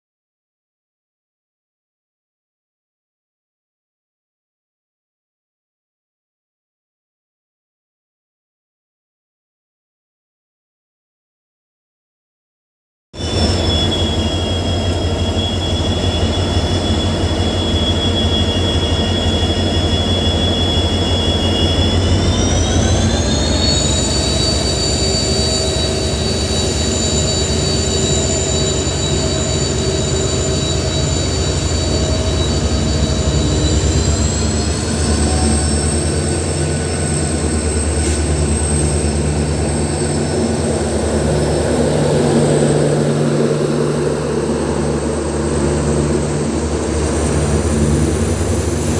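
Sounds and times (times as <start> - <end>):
diesel locomotive engine humming: 13.2 - 48.9.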